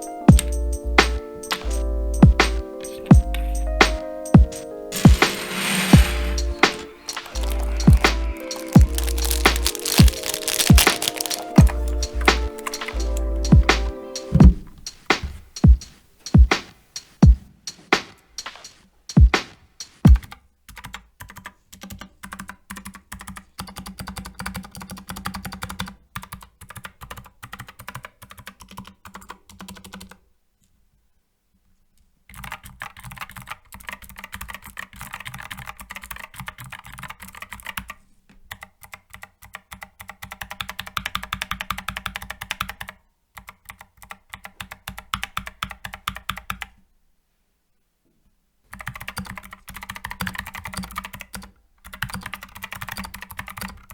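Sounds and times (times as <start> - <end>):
mechanical keyboard typing: 4.4 - 13.3, 20.2 - 30.2, 32.3 - 46.7, 48.7 - 53.9.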